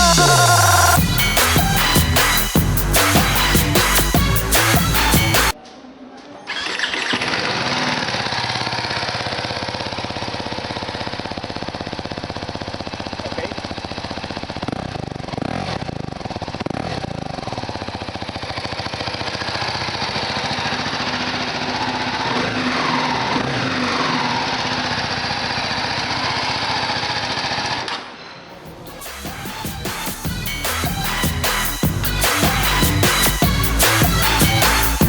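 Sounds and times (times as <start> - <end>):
motorcycle engine cranking: 6.5 - 28.0
motorcycle engine idling: 7.3 - 27.8, 28.7 - 35.0.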